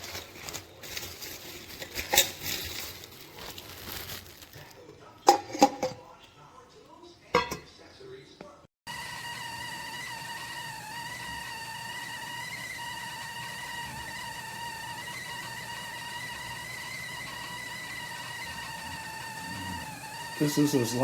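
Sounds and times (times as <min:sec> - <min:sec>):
kettle whistling: 0:08.9 - 0:21.0.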